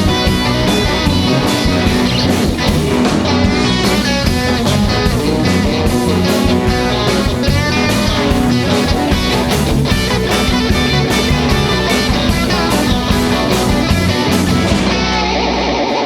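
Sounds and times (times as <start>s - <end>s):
jazz ensemble playing: 0.0s - 15.5s
guitar: 0.0s - 16.0s.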